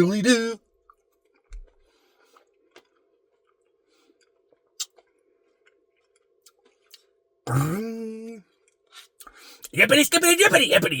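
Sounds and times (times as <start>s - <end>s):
chewing: 0.8s - 7.1s.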